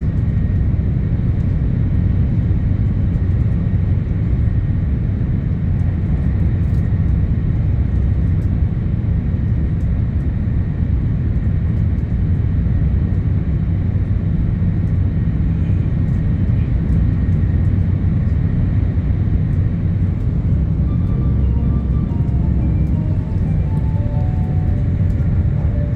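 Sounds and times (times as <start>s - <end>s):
train rumbling on track: 0.0s - 25.9s
faint high steady tone: 20.2s - 25.9s.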